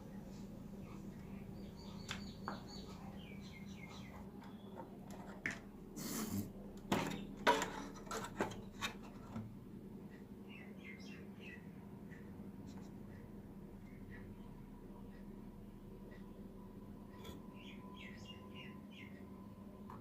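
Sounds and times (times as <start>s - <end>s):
low steady hum: 0.0s - 20.0s
faint bird chirps: 0.8s - 4.8s, 17.1s - 19.5s
clicks and scrapes handling speaker: 6.9s - 9.5s.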